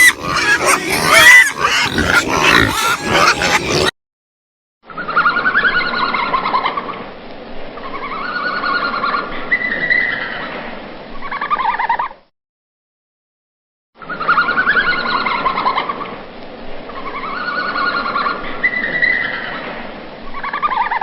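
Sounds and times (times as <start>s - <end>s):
animal pulsed calls: 0.0s - 3.9s.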